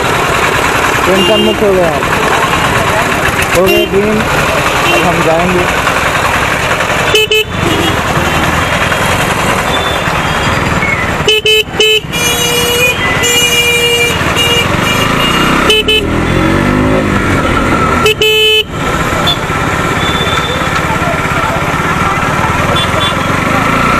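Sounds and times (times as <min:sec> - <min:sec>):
motorcycle wind and road noise: 0:00.0 - 0:23.9
vehicle horn: 0:01.1 - 0:01.9, 0:03.5 - 0:04.1, 0:04.8 - 0:05.4, 0:07.1 - 0:08.5, 0:11.2 - 0:16.4, 0:18.0 - 0:20.6, 0:22.7 - 0:23.4.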